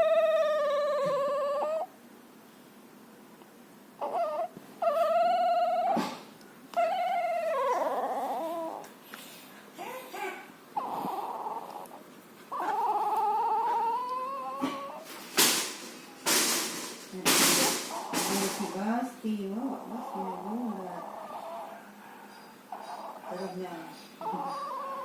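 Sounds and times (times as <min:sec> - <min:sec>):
puppy snoring with squeaky squeals: 0:00.0 - 0:02.0, 0:04.0 - 0:08.9, 0:09.8 - 0:15.1, 0:17.4 - 0:25.0.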